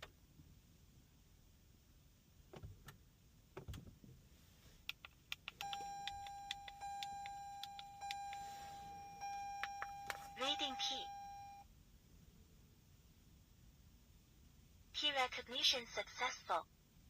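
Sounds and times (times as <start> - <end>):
steady high electronic beep: 5.6 - 11.6.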